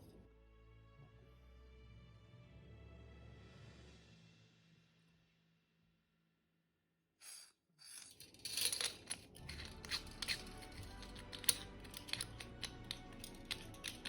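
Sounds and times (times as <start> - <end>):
metal gun parts clicking and rattling: 7.2 - 14.0.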